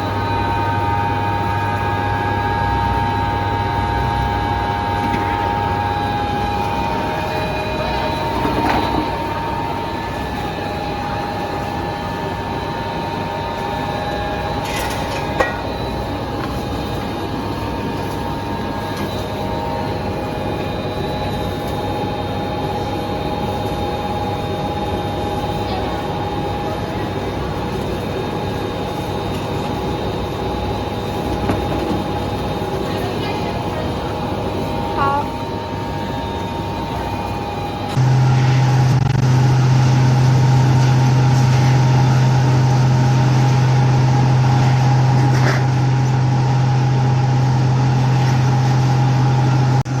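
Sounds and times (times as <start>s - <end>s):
machinery humming: 0.0s - 50.0s
steady whining tones: 0.0s - 50.0s.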